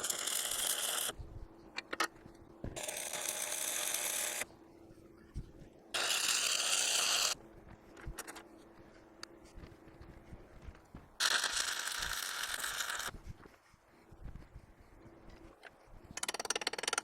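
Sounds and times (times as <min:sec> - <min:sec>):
arc welding crackle and hiss: 0:00.0 - 0:01.1, 0:11.2 - 0:13.1
welder low hum: 0:00.0 - 0:01.7, 0:02.3 - 0:13.3.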